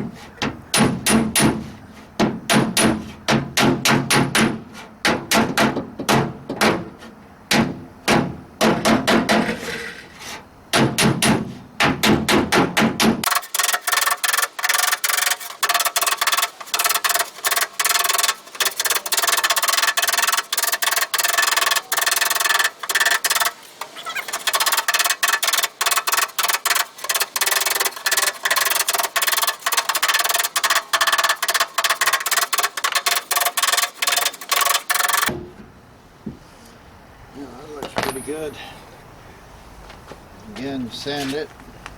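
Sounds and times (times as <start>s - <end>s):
hammer tapping on sheet steel: 0.4s - 1.6s, 2.2s - 6.9s, 10.7s - 23.6s.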